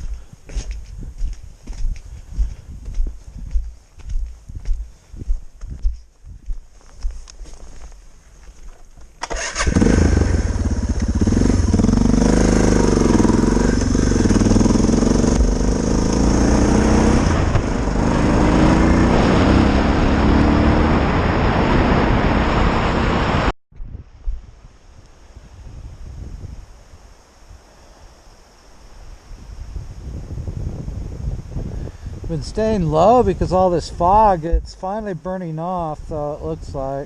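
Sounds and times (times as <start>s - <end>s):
motorcycle engine revving: 9.2s - 23.5s.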